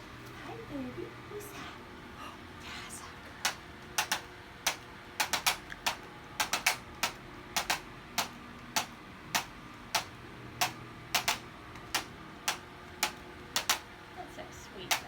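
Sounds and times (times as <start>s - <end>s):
sharp clicks: 3.4s - 13.8s.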